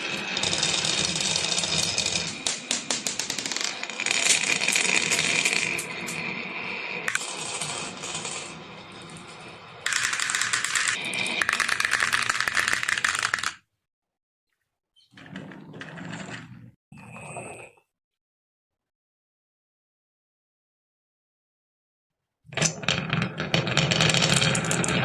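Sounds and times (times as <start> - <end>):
marbles clattering down wooden run: 0.1 - 6.2, 7.1 - 13.6, 23.2 - 25.0.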